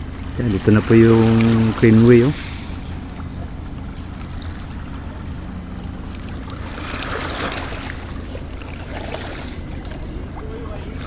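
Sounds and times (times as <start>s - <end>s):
low engine drone: 0.0s - 11.0s
water wash: 0.0s - 11.0s.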